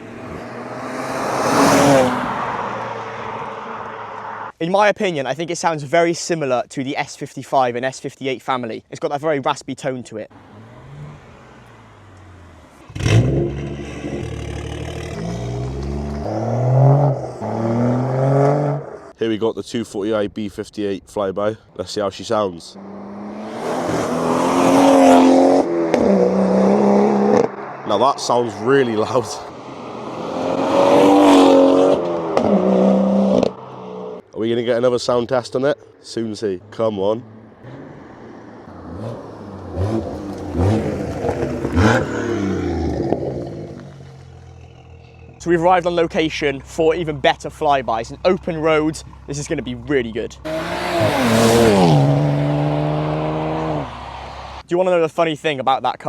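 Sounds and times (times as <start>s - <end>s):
car exhaust accelerating hard: 10.4s - 18.9s, 22.8s - 34.2s, 37.2s - 54.6s.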